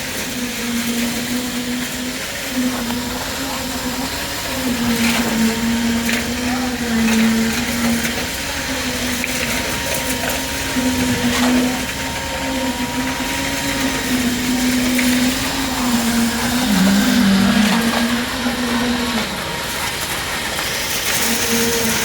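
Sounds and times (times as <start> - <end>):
motor humming: 0.0 - 22.0.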